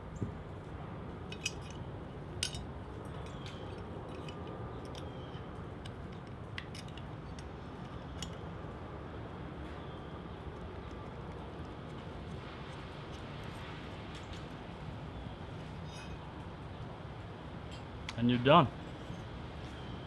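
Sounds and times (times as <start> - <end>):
metallic clicks of small tools: 2.4 - 8.4.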